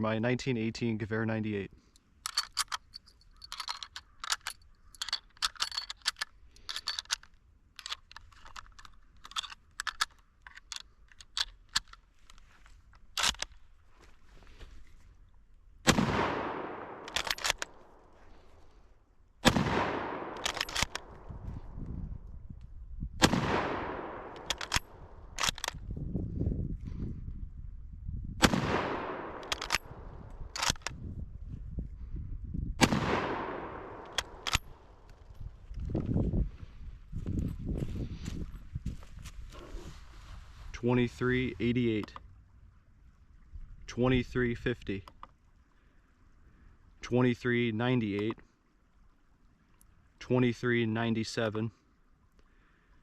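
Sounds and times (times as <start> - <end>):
rifle bolt clack: 2.2 - 12.4, 13.0 - 13.6, 16.2 - 17.8, 19.5 - 21.2, 23.2 - 25.8, 28.4 - 31.0, 32.8 - 35.2
rifle shots with echo: 15.8 - 17.7, 19.4 - 21.2, 23.2 - 25.6, 28.4 - 30.8, 32.8 - 34.8.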